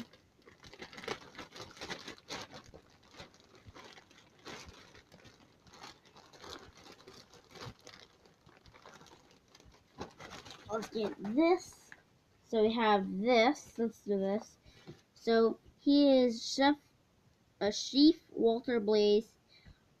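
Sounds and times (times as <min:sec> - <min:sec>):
packaging crinkling and rustling: 0:00.0 - 0:12.0
small clicks and crackles: 0:00.0 - 0:12.0.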